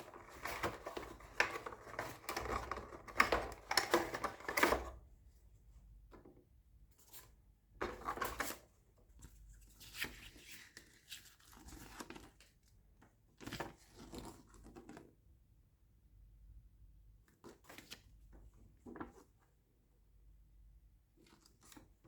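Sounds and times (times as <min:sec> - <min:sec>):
packaging rustling and tearing: 0:00.0 - 0:04.9.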